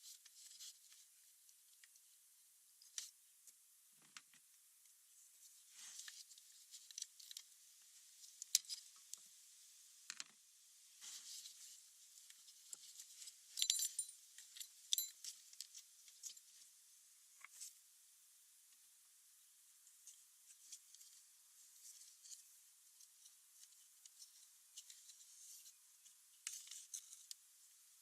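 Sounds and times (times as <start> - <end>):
small metal tools clinking: 13.5 - 15.4.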